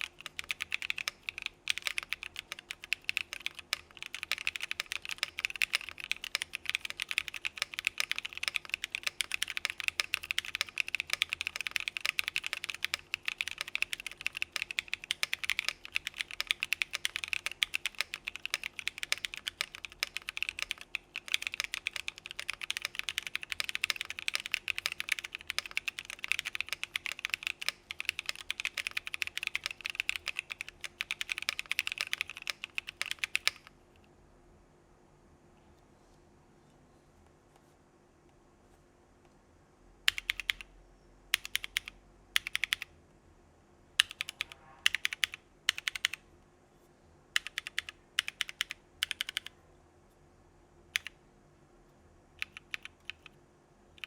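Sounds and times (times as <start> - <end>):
mechanical keyboard typing: 0.0 - 33.7, 40.0 - 40.7, 41.3 - 42.9, 44.0 - 46.2, 47.4 - 49.6, 50.9 - 51.2, 52.4 - 53.4.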